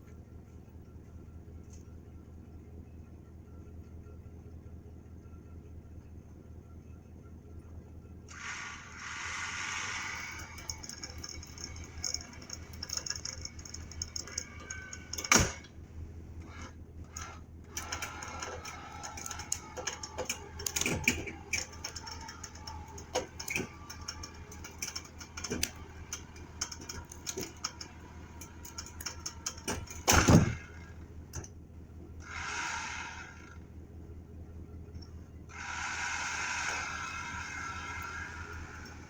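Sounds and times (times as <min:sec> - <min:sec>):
steady low hum: 0:00.0 - 0:39.0
metal cable and chain clanking: 0:10.2 - 0:15.8, 0:16.4 - 0:31.4.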